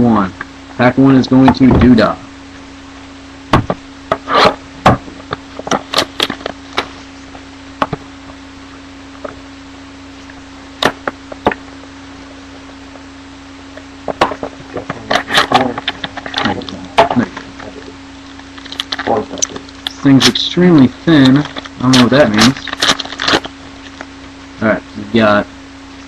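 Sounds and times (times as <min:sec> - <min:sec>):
low electrical hum: 0:00.0 - 0:26.0
card pack tearing and crinkling: 0:05.7 - 0:07.0, 0:18.5 - 0:19.6, 0:21.1 - 0:24.0.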